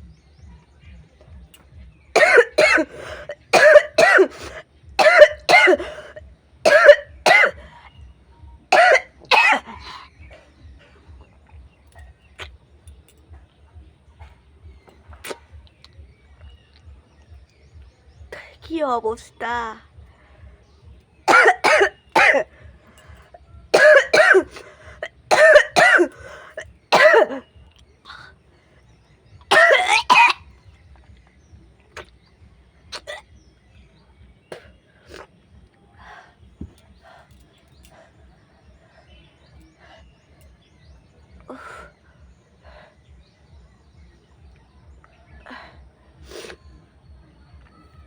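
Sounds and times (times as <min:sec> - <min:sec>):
woman coughing: 0:02.2 - 0:07.7, 0:08.7 - 0:10.0, 0:21.3 - 0:22.5, 0:23.7 - 0:27.4, 0:29.5 - 0:30.4.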